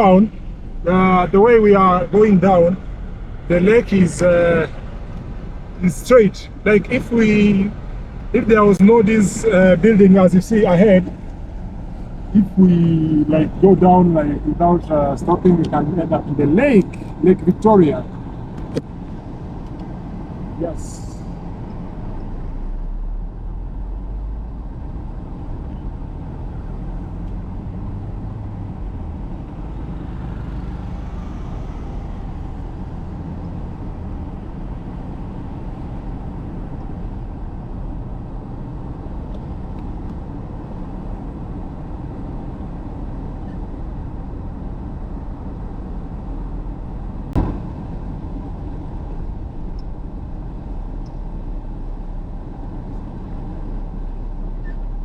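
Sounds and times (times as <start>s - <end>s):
car engine and road noise: 0.0s - 55.0s
sharp knock: 47.4s - 47.7s.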